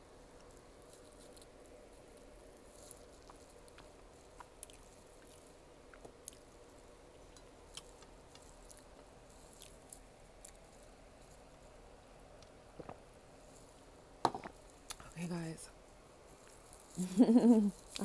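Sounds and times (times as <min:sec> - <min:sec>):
low steady hum: 0:00.0 - 0:18.0
chewing and mouth sounds: 0:00.4 - 0:11.6.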